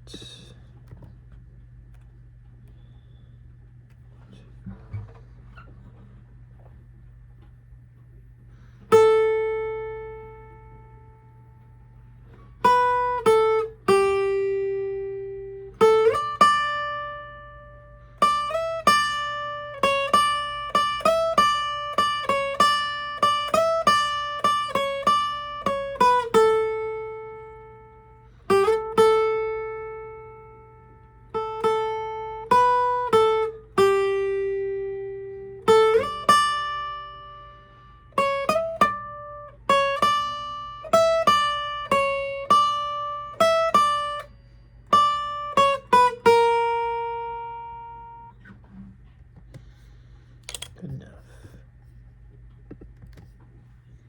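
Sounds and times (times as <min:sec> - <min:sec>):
faint steady hum: 0:00.0 - 0:54.0
plucked guitar-like melody: 0:08.9 - 0:11.7, 0:12.3 - 0:48.9.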